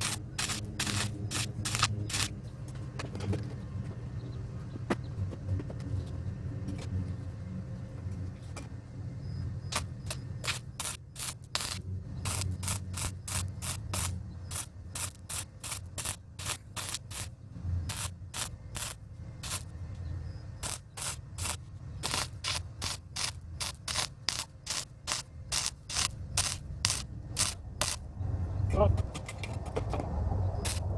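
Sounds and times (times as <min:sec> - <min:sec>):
steady low hum: 0:00.0 - 0:30.9
short scraping strokes on metal: 0:09.7 - 0:19.7, 0:20.6 - 0:28.0.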